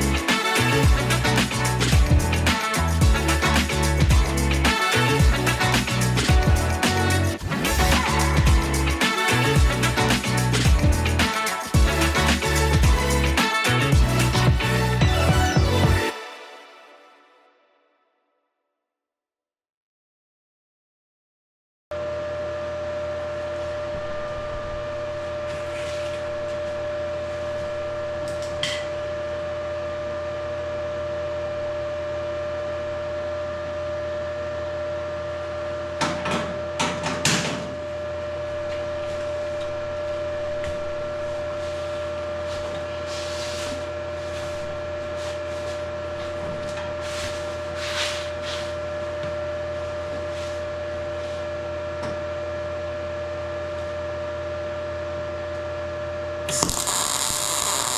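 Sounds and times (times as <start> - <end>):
steady mechanical hum: 22.0 - 57.9.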